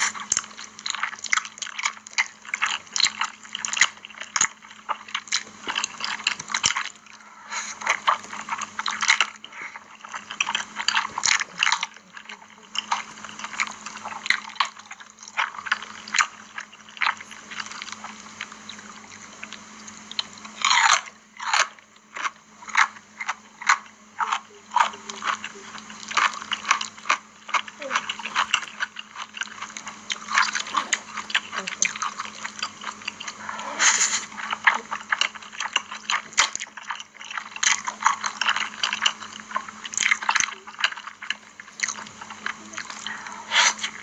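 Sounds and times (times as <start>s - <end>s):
noodle slurps: 0.0s - 19.6s, 25.2s - 44.0s
wet chewing: 0.0s - 44.0s
lip smacks: 25.4s - 44.0s.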